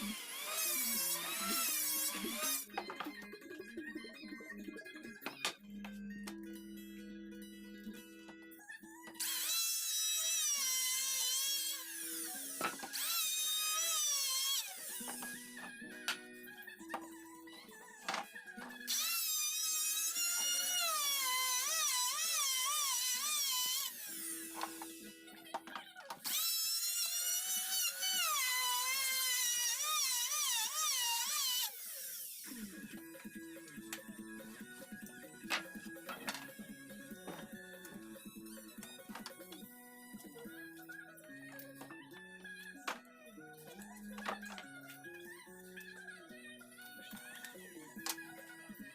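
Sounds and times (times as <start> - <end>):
small power tool whining: 0.0 - 3.1, 9.0 - 43.0
power tool motor whining: 18.6 - 25.3.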